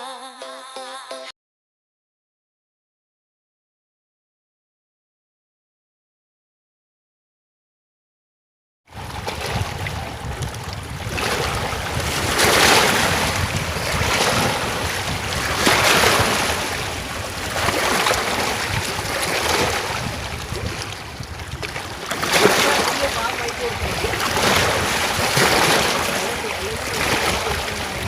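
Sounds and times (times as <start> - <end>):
wind rumbling on microphone: 8.9 - 28.0
waterfall rushing water: 21.9 - 28.0.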